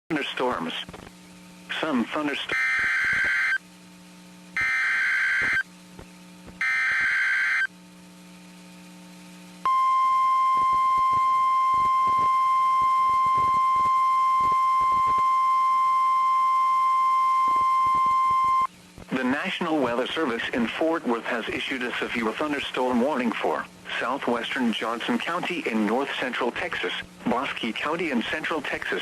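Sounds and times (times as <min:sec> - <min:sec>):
buzzing data bursts: 0:01.7 - 0:03.6, 0:04.6 - 0:05.7, 0:06.4 - 0:07.7, 0:10.5 - 0:15.3
steady alarm tone: 0:02.5 - 0:03.6, 0:04.6 - 0:05.7, 0:06.6 - 0:07.8, 0:09.6 - 0:18.7.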